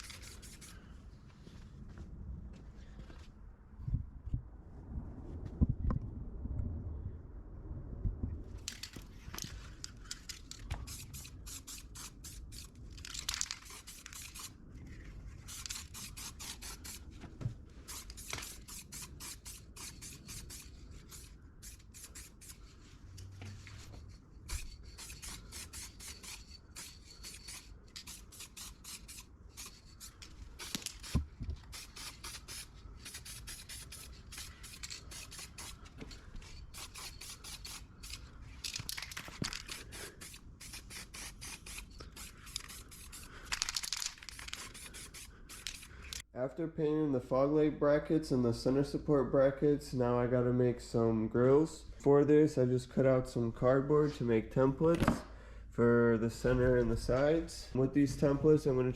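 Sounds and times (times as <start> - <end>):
spray paint can hissing: 10.8 - 12.7, 13.3 - 14.5, 15.5 - 17.0, 17.9 - 22.6, 24.5 - 35.8, 40.0 - 43.3, 44.2 - 45.9.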